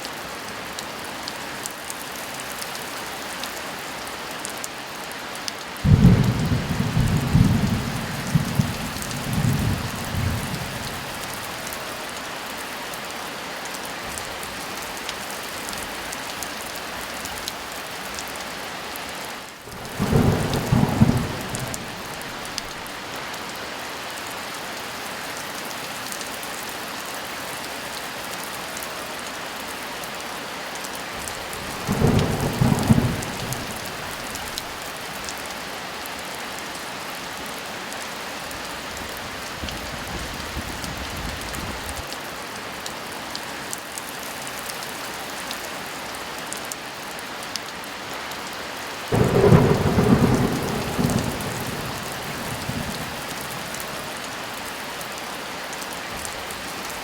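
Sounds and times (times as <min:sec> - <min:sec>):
heavy rain: 0:00.0 - 0:57.0
thunder rumbling: 0:05.9 - 0:11.6, 0:19.7 - 0:22.9, 0:31.6 - 0:34.8, 0:49.1 - 0:53.8.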